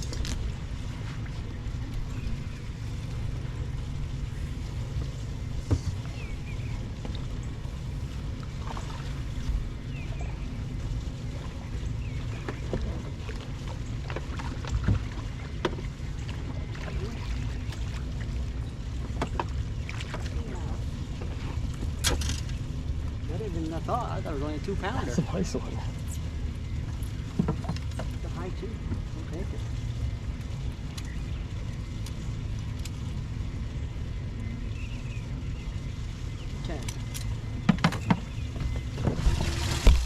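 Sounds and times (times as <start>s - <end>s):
wind and water rumble: 0.0s - 40.0s
knocks on boat: 37.6s - 40.0s.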